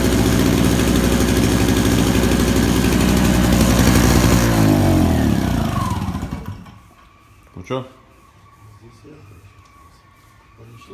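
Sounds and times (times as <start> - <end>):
generator running and spinning down: 0.0 - 6.9.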